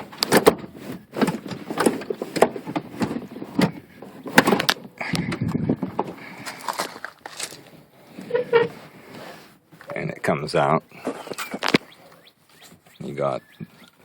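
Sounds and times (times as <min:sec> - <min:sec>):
car seat knocking and clunking: 0:00.1 - 0:06.2.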